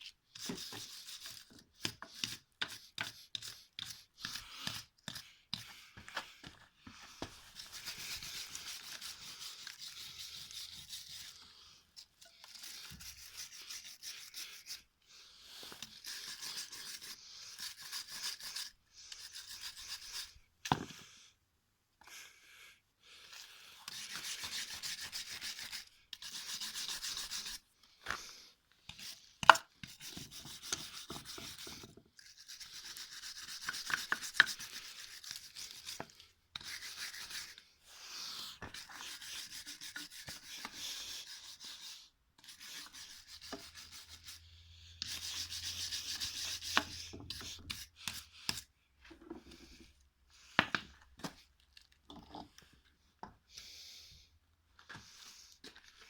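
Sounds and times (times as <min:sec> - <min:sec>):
scraping and rubbing on metal part: 0:38.7 - 0:49.9.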